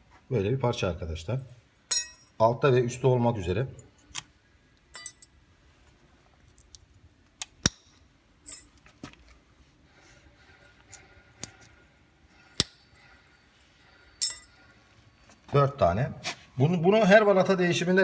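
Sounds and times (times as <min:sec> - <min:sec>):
metal clips clinking: 0:04.9 - 0:05.3, 0:07.4 - 0:08.8, 0:12.6 - 0:13.1, 0:14.2 - 0:14.6.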